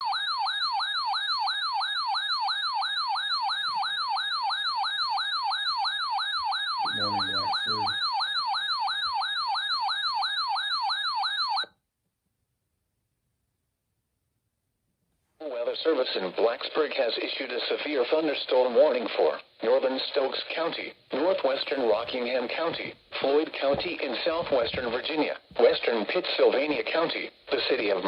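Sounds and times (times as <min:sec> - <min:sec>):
electronic siren sweeping rapidly: 0:02.8 - 0:09.6.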